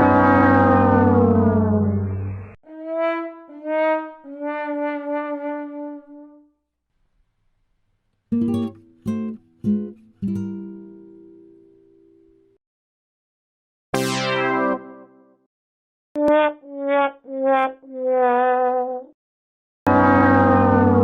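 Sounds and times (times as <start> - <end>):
plucked guitar notes: 8.3 - 12.4
sad trombone sting: 19.9 - 21.0.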